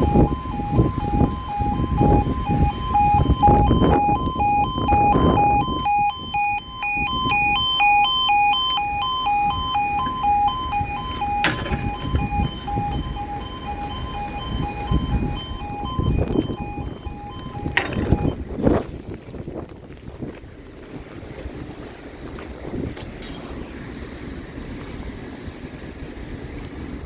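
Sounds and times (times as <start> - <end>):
level crossing two-tone alarm: 0.0 - 18.5
wind buffeting microphone: 0.0 - 27.0.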